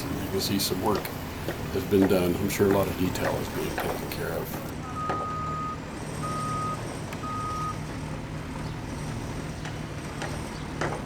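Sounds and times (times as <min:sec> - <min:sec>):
reversing alarm beeping: 0:04.6 - 0:07.9.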